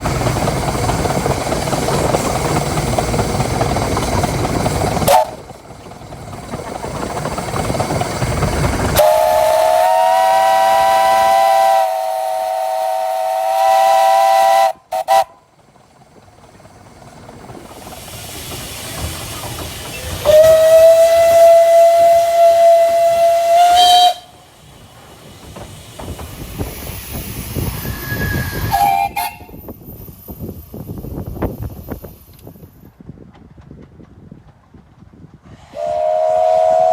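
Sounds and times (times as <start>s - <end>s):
steam hissing: 0.0s - 32.6s, 35.4s - 36.9s
running train noise: 0.0s - 36.9s
steam locomotive chime whistle: 5.1s - 5.4s, 8.9s - 15.5s, 20.0s - 24.5s, 27.7s - 29.7s, 35.6s - 36.9s
single-note steam whistle: 9.0s - 15.4s, 20.2s - 24.4s, 27.8s - 29.6s, 35.6s - 36.9s.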